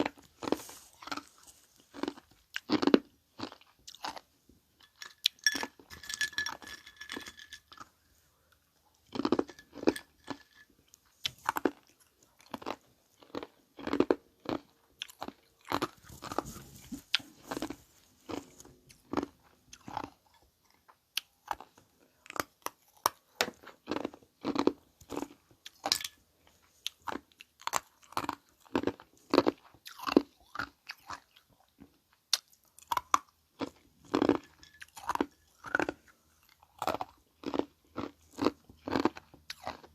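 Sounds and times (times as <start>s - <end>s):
person crunching ice: 0.0s - 4.3s, 9.1s - 10.7s.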